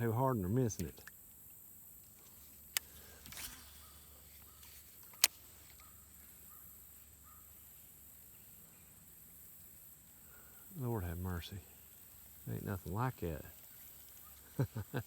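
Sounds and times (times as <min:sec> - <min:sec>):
faint bird chirps: 0:02.3 - 0:12.7, 0:13.6 - 0:15.0
sharp click: 0:05.0 - 0:05.9.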